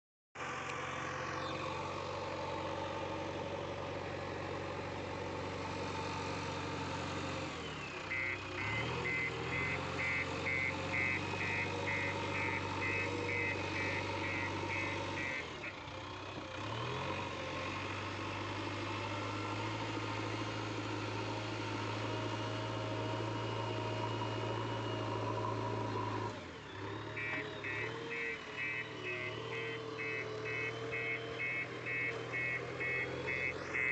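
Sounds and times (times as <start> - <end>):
diesel engine revving: 0.4 - 33.9
reversing alarm beeping: 8.1 - 15.7, 27.2 - 33.9.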